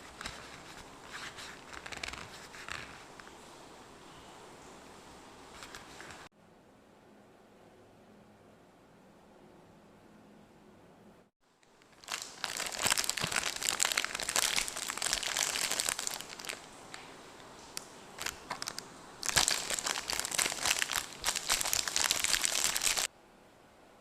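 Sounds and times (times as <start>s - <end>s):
plastic wrapper crinkling: 0.0s - 3.1s, 11.6s - 23.1s.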